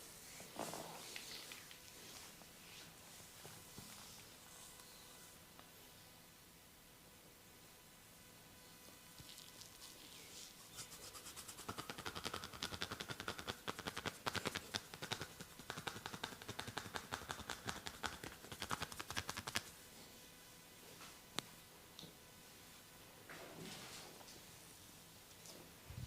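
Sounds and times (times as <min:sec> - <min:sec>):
hands slapping body rapidly: 0:11.6 - 0:19.7.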